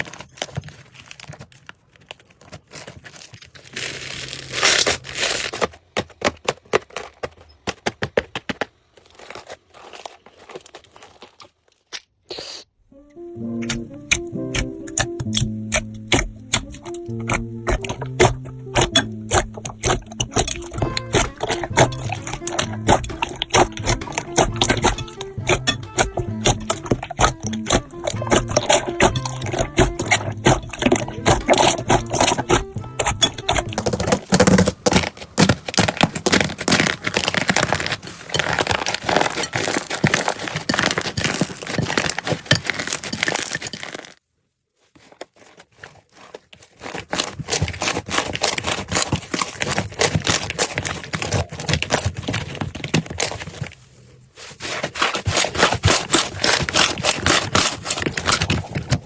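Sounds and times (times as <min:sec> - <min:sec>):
slime crackling and popping: 0:03.5 - 0:05.6, 0:13.6 - 0:44.2, 0:55.0 - 0:59.0.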